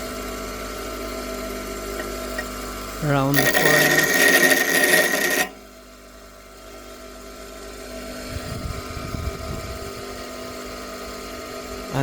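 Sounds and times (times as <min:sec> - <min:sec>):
grinder motor humming: 0:01.6 - 0:05.8
grinder cutting metal: 0:02.0 - 0:02.5, 0:03.2 - 0:05.6.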